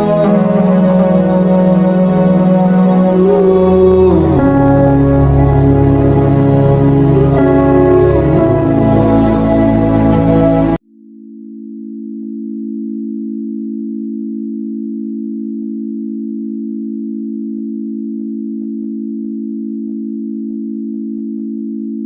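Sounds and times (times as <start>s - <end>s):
electronic siren steady tone: 0.0s - 10.8s.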